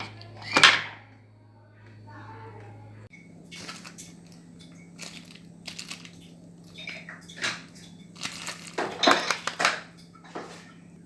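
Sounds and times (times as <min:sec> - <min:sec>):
steady low hum: 0:00.0 - 0:11.0
metal parts clattering and scraping: 0:08.2 - 0:09.8.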